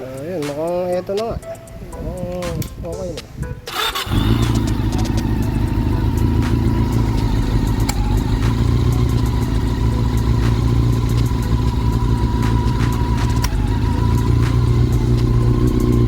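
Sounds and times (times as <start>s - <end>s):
sharp clicks: 1.5s - 16.0s
motorcycle engine idling: 3.7s - 16.0s.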